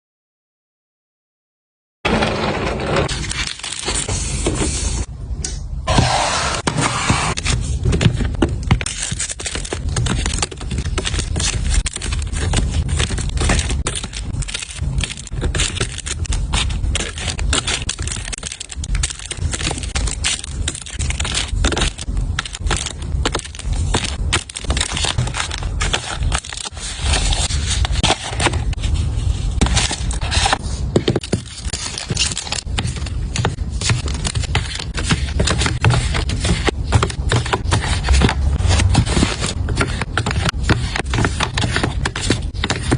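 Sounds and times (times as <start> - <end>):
items being handled and set down: 5.9 - 42.9
packaging crinkling: 8.6 - 42.9.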